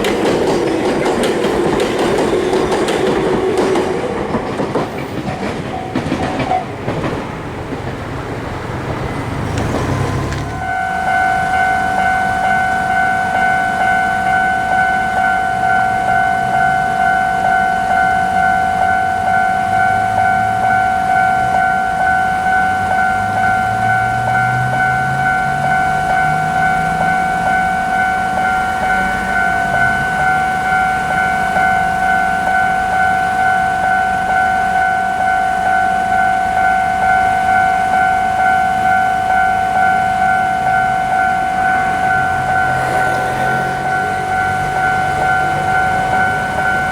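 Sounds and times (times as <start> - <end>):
train motor hum: 0.0 - 16.8, 38.4 - 46.9
level crossing bell ringing: 10.2 - 46.9.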